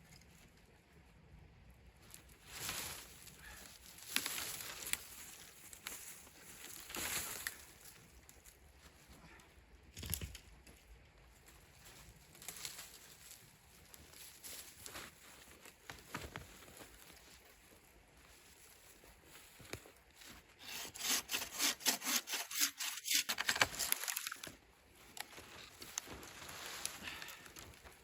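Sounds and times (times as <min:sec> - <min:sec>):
hand saw cutting wood: 0:20.6 - 0:24.0.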